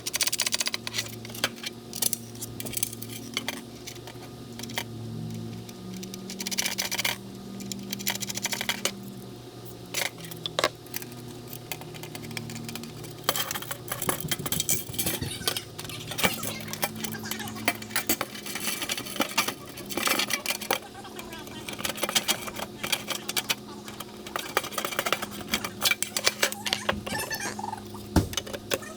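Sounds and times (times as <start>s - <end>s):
metal hardware clinking on metal plate: 11.6s - 20.8s.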